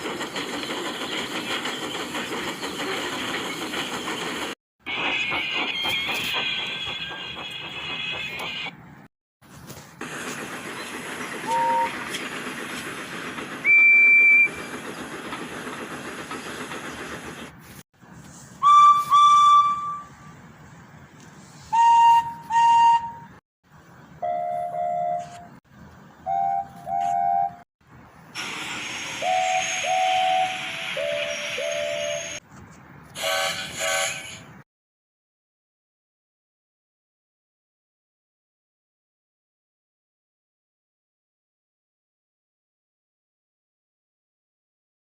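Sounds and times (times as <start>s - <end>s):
steam hissing: 10.0s - 17.5s, 28.3s - 32.4s, 33.2s - 34.4s
steam whistle toots: 11.4s - 12.0s, 13.6s - 14.6s, 18.6s - 20.3s, 21.7s - 23.4s, 28.4s - 32.4s, 33.2s - 34.5s.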